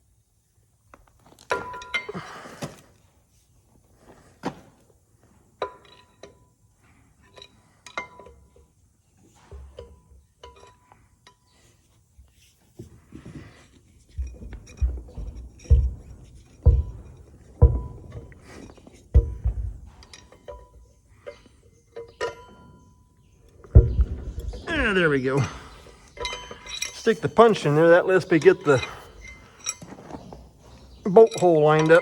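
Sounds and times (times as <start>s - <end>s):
metal tools clinking: 1.3s - 2.4s, 5.6s - 11.9s, 13.2s - 32.0s
heavy thumps: 14.1s - 21.0s, 23.5s - 30.7s.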